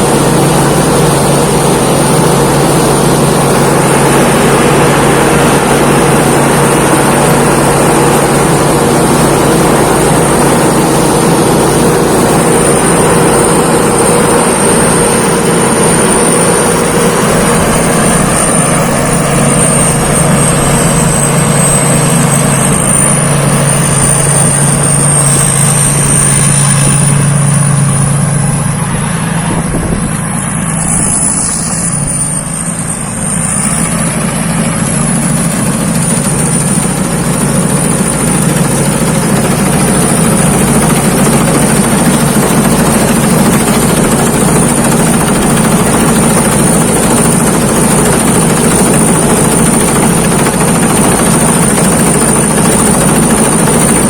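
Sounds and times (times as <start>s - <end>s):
combine harvester running: 0.0s - 54.0s
thin high whine: 0.0s - 54.0s.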